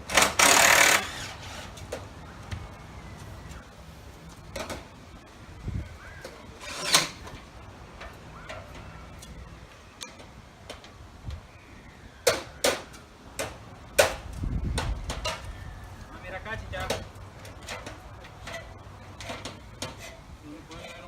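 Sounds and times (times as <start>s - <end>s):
knocks and clicks of gutter work: 12.2s - 15.5s, 16.7s - 21.0s.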